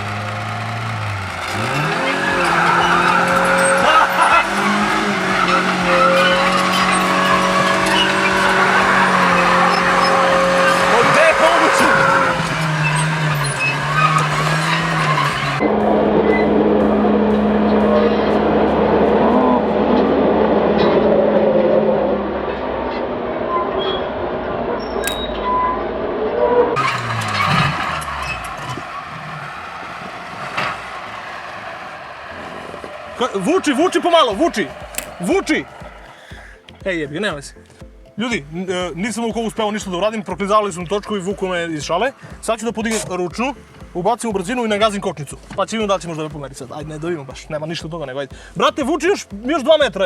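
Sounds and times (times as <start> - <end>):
tyres spinning on loose dirt: 0.0 - 15.6, 26.8 - 37.3
car engine at high revs: 0.0 - 23.3, 26.7 - 36.3.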